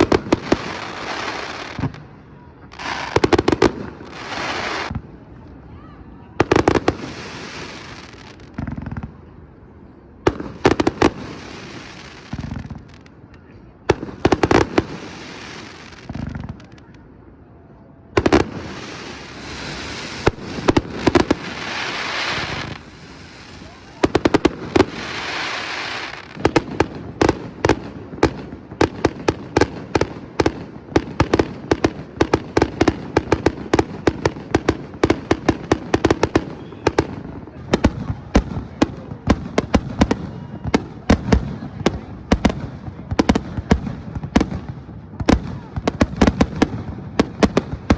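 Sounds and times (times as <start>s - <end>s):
deep firework booms: 18.2s - 47.9s.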